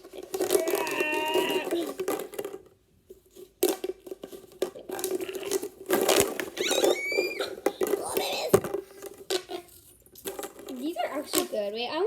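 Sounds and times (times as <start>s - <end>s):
plastic pop tubes clicking: 0.0s - 2.7s, 3.6s - 11.5s
short rising squeak: 6.6s - 7.5s.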